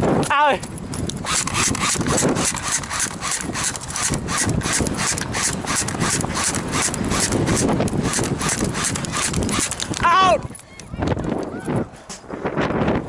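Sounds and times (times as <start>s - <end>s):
rhythmic rubbing on microphone: 1.2s - 10.5s.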